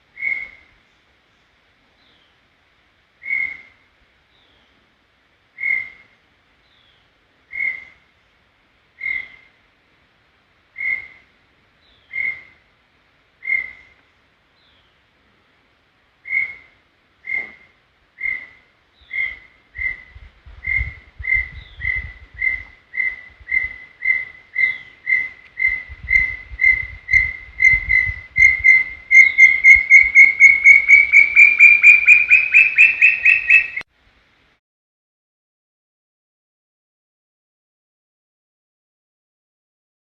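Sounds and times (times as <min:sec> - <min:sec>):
bird whistling song: 0:03.2 - 0:03.7, 0:05.6 - 0:06.0, 0:06.7 - 0:08.0, 0:09.0 - 0:09.5, 0:11.9 - 0:12.5, 0:13.4 - 0:14.0, 0:18.2 - 0:33.8.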